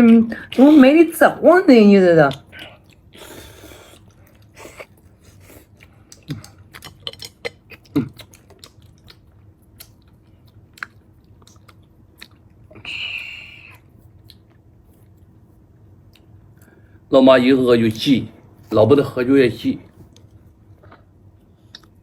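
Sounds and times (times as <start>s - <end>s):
people chewing: 2.3s - 15.4s, 20.0s - 22.0s.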